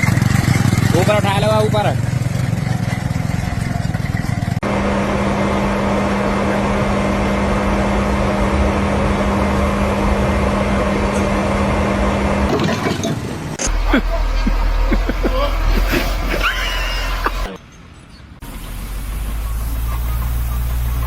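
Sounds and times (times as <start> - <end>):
heavy machinery humming: 2.1 - 17.6.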